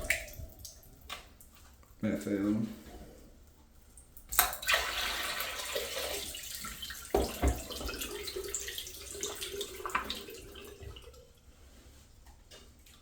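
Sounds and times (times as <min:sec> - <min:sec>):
toilet flushing: 0:04.3 - 0:11.6.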